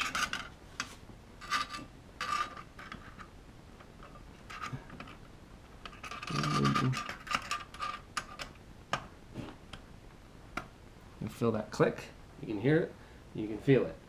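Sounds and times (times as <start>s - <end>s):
metal clicks and scrapes: 0.0s - 8.6s.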